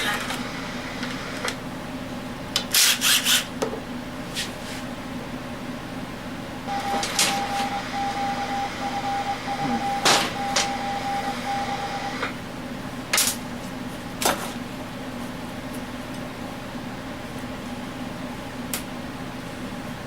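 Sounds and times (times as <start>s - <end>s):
steady high-pitched tone: 6.7s - 12.3s.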